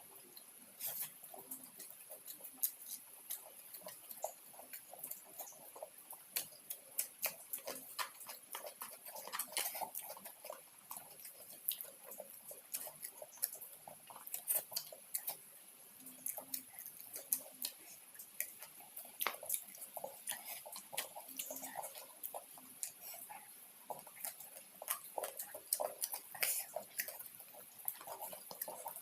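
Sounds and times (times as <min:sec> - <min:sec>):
person chewing food: 0:00.0 - 0:29.0.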